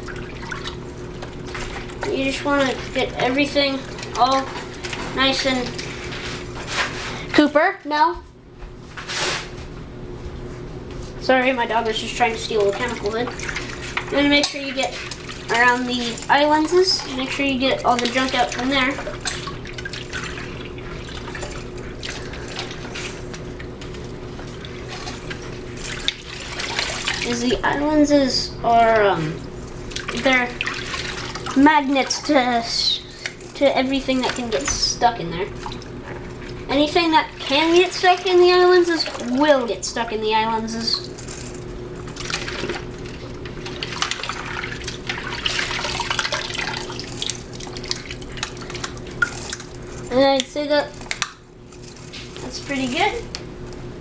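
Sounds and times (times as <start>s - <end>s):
scrubbing by hand: 0.0s - 7.3s, 11.4s - 41.2s
water sloshing in sink: 0.0s - 8.0s, 8.9s - 54.0s
water drips: 11.8s - 22.8s.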